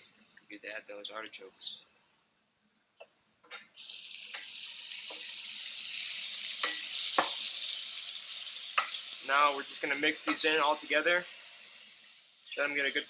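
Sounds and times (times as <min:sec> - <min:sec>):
food sizzling in a hot pan: 0:03.5 - 0:13.0.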